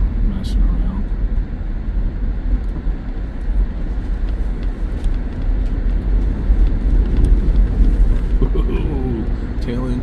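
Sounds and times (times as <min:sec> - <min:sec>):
car engine and tyre rumble: 0:00.0 - 0:10.0.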